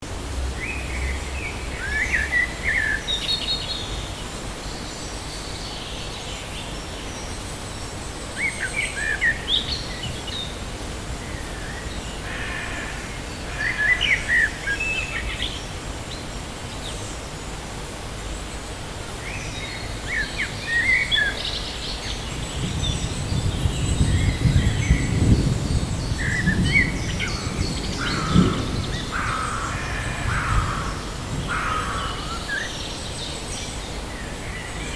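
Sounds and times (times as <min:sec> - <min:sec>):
steady background hiss: 0:00.0 - 0:34.9
birds chirping: 0:19.6 - 0:34.9.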